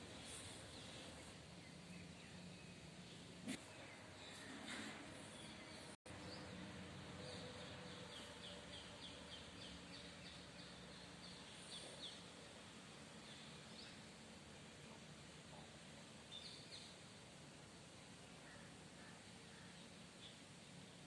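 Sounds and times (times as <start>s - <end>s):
outdoor background hiss: 0.0s - 21.0s.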